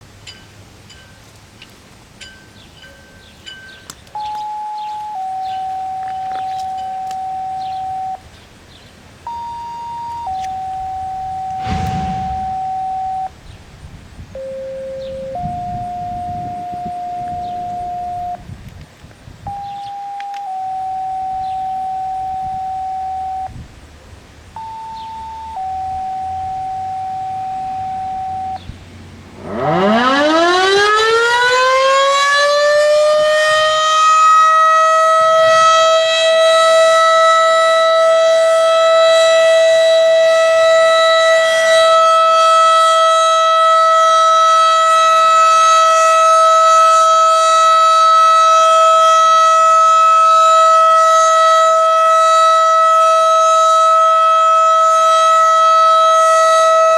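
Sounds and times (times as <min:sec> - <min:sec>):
warning siren wailing: 0:04.2 - 0:08.3, 0:09.3 - 0:13.3, 0:14.4 - 0:18.5, 0:19.5 - 0:23.7, 0:24.6 - 0:56.9
steady electronic tones: 0:11.4 - 0:13.3.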